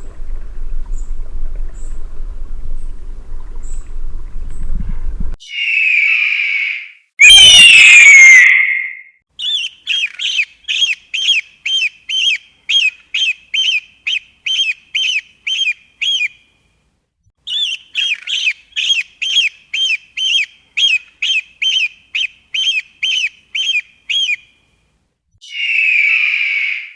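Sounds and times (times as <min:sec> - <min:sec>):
eagle calling: 0:05.4 - 0:16.3, 0:17.5 - 0:24.5, 0:25.4 - 0:26.9.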